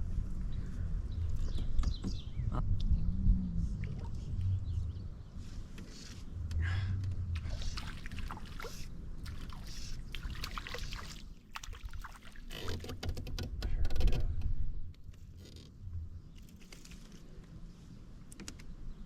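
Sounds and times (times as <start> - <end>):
water splashing at a canoe: 7.4 - 13.2.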